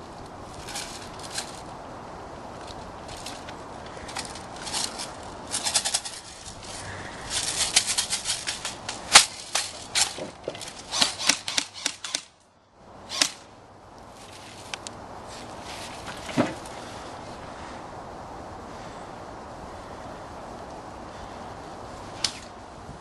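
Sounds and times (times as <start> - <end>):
airsoft rifles firing: 10.8 - 12.4, 13.1 - 13.5.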